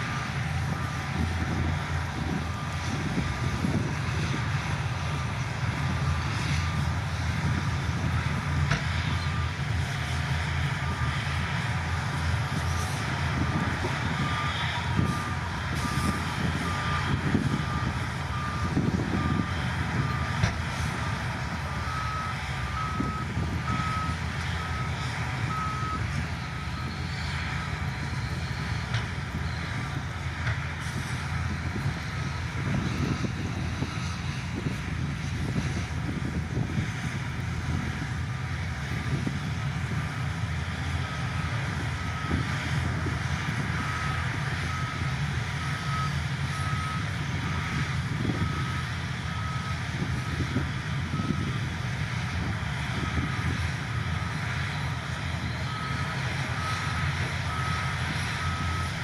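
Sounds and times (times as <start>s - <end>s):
diesel construction machinery running: 0.0s - 59.0s
higher reversing beeps: 13.4s - 28.6s
reversing alarm beeping: 13.4s - 30.0s, 41.0s - 51.7s, 55.4s - 59.0s.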